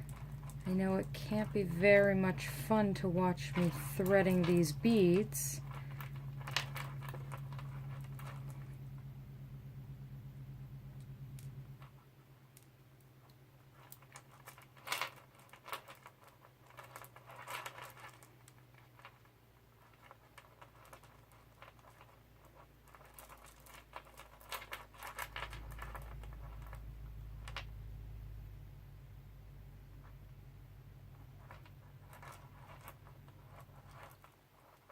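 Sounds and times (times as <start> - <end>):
low hum: 0.0 - 14.6, 24.5 - 34.9
beads clicking and rattling: 13.7 - 18.3, 19.8 - 26.8.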